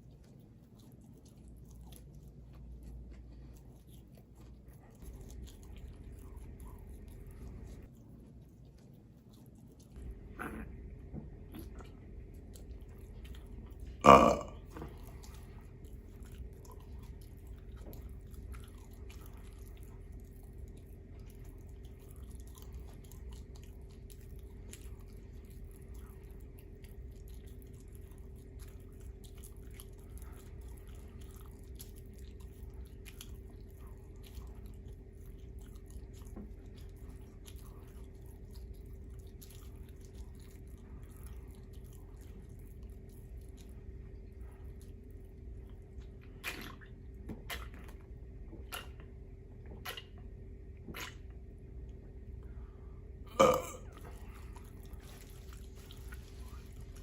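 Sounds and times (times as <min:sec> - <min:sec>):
faint chewing and mouth clicks: 0:00.0 - 0:57.0
faint hum: 0:00.0 - 0:57.0
loud human burp: 0:14.0 - 0:14.7, 0:53.3 - 0:53.9.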